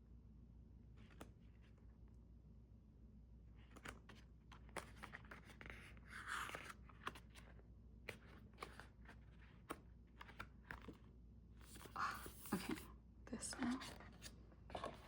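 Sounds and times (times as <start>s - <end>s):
paper rustling: 3.6s - 12.9s.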